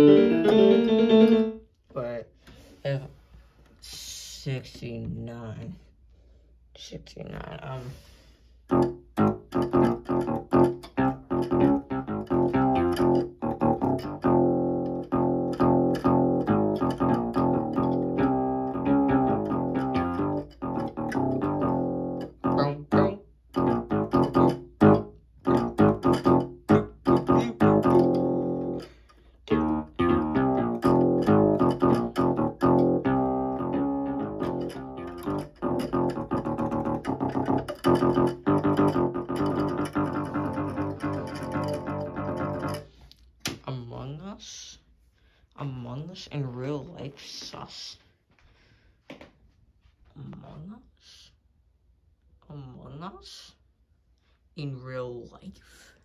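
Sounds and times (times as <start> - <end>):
bass line: 0.0 - 1.6, 8.7 - 42.9
plucked guitar notes: 0.0 - 1.6, 8.7 - 42.9.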